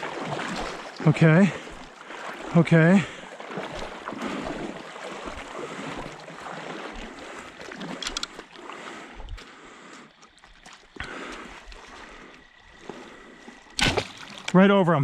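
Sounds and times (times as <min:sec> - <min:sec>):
hiss of moving water: 0:00.0 - 0:13.7
small sharp clicks: 0:07.8 - 0:08.4.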